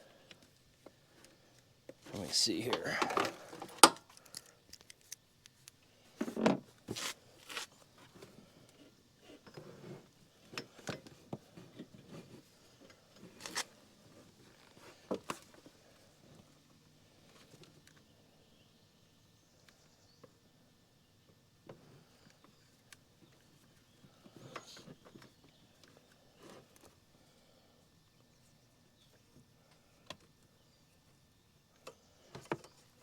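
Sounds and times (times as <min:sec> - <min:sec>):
rustling and scraping: 0:02.9 - 0:15.8
clicks and knocks of handling: 0:03.0 - 0:08.3.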